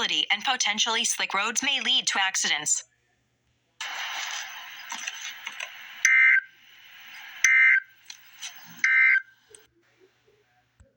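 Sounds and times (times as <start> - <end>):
harsh digital data chirps: 3.8 - 9.3.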